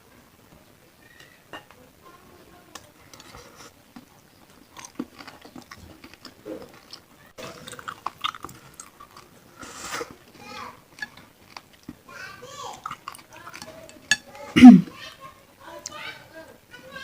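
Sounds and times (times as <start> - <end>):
chewing with wet mouth clicks: 3.1 - 9.3, 10.9 - 12.0, 12.7 - 14.3.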